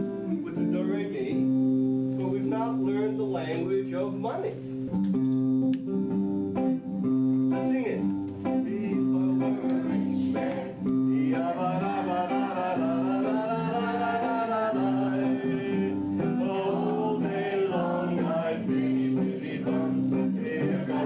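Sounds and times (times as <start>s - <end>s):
guitar playing chords: 0.0s - 21.0s
person singing: 8.4s - 21.0s.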